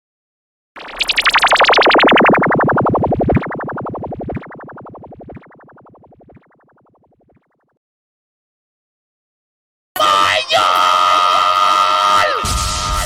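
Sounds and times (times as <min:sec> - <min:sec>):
pulsing tone sweeping down: 0:00.8 - 0:07.0.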